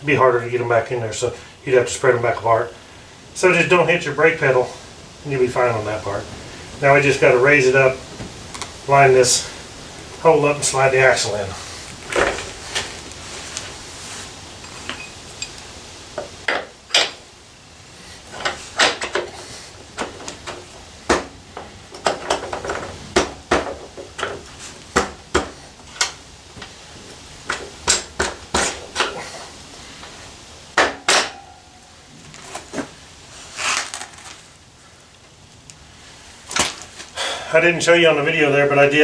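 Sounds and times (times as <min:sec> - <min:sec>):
metallic clanks and clinks: 0:31.0 - 0:31.9.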